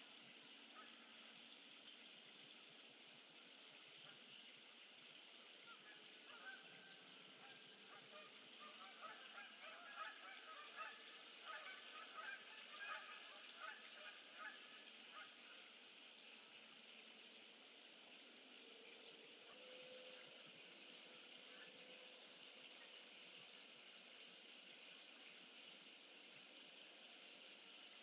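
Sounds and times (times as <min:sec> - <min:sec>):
faint bird flock calling: 0:05.6 - 0:15.6.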